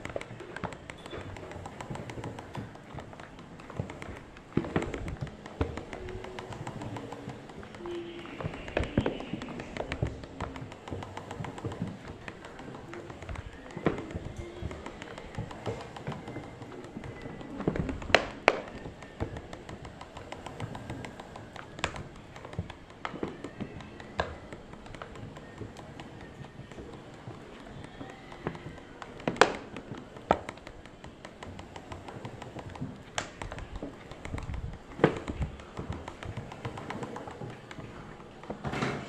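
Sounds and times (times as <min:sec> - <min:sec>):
board ticking and clicking: 0:00.0 - 0:39.0.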